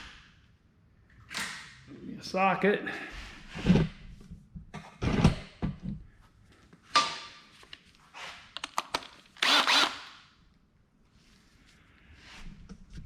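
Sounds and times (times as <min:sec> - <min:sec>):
power drill bursts: 0:09.4 - 0:10.2.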